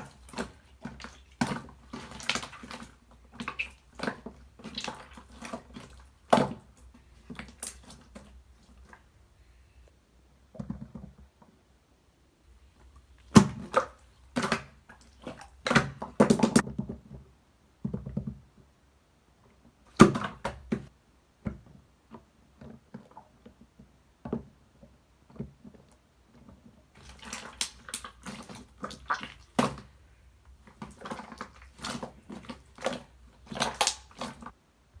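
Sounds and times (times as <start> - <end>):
slime squished by hand: 0.0 - 9.1, 12.7 - 16.6, 19.9 - 20.9, 27.0 - 34.5.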